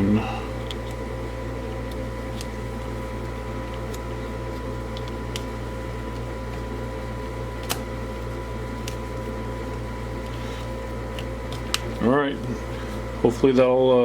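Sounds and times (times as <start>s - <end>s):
room hum: 0.0s - 14.0s.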